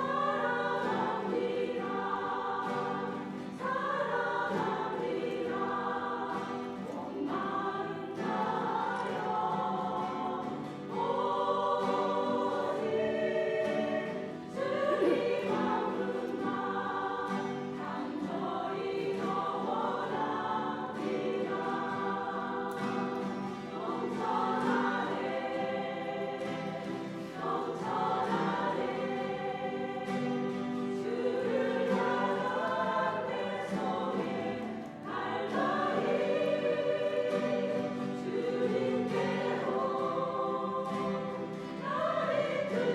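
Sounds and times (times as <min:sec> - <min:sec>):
choir singing in harmony: 0:00.0 - 0:42.9.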